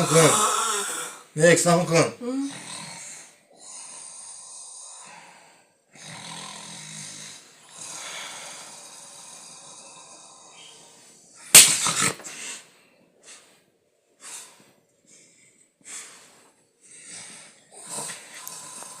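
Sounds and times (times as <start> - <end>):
person snoring: 0.0 - 1.3, 2.2 - 11.0, 17.1 - 19.0
breathy wheezes and gasps: 0.0 - 1.4, 14.2 - 19.0.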